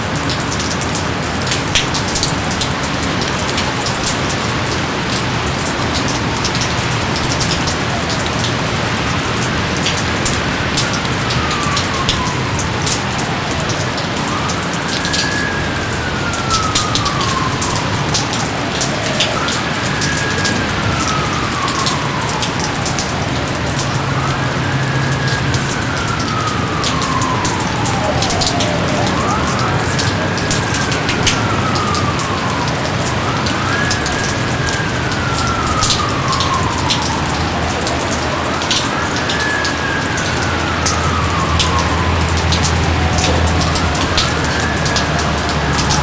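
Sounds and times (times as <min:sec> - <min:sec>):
steady rain: 0:00.0 - 0:46.0
wailing tone rising and sliding down: 0:09.8 - 0:46.0.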